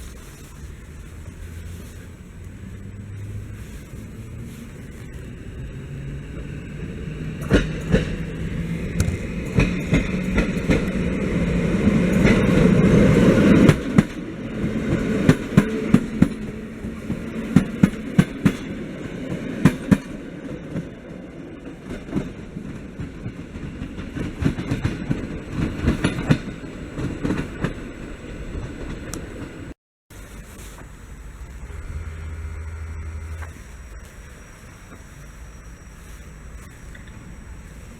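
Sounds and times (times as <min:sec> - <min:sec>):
wheels clicking over rail joints: 0:00.0 - 0:29.7
train rumbling past: 0:00.0 - 0:37.9.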